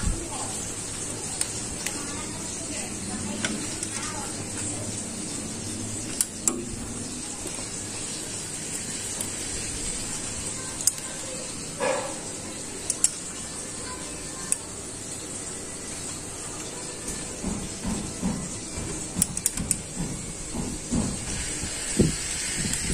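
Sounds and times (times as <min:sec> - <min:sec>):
hand tools clicking on metal: 0:12.8 - 0:13.2, 0:19.1 - 0:20.1.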